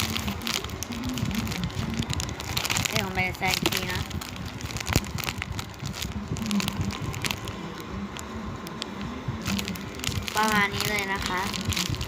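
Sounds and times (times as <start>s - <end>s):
plastic packaging crackling: 0.0s - 12.0s
steady low hum: 0.0s - 12.0s.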